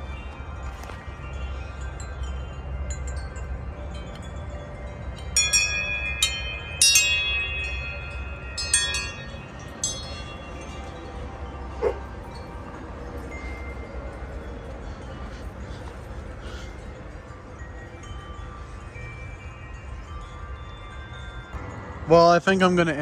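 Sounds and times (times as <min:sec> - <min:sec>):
metal wind chimes ringing: 0:00.0 - 0:23.0.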